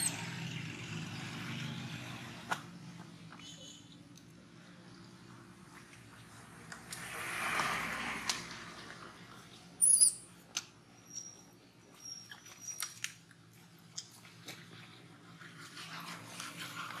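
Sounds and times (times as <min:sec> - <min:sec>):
monkey squeak: 0:00.0 - 0:00.2, 0:09.8 - 0:10.3.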